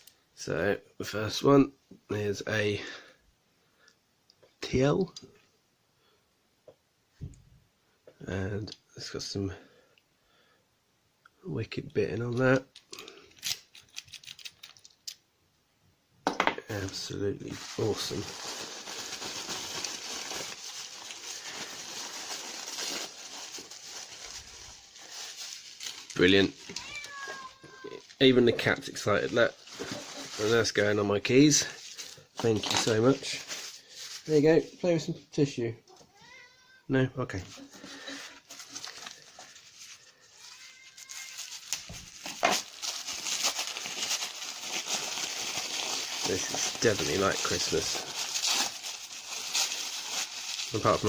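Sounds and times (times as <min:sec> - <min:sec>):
package wrapping rustling: 0:12.7 - 0:15.2, 0:16.7 - 0:34.9, 0:37.5 - 0:51.0.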